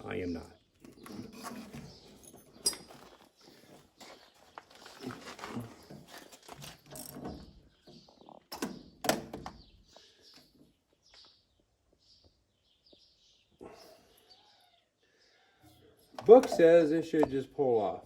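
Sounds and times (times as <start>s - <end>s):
metal tools clanking: 0.9s - 3.1s, 16.2s - 17.4s.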